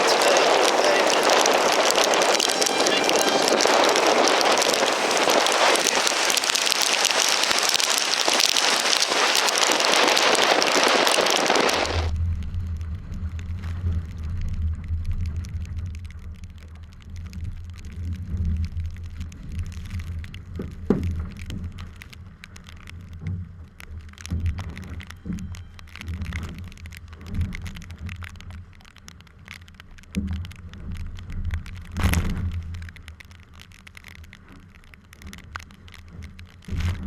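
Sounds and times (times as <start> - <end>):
water spray hissing: 0.0 - 12.1
wind buffeting microphone: 0.0 - 28.5.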